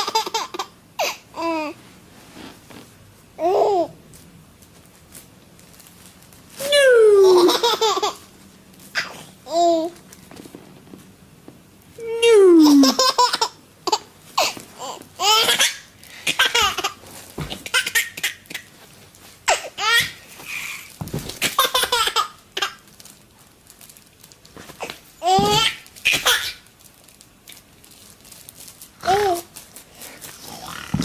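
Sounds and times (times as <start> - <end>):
baby laughing: 0.0 - 1.6, 6.7 - 8.3, 12.6 - 17.0, 21.5 - 22.8, 25.2 - 26.6.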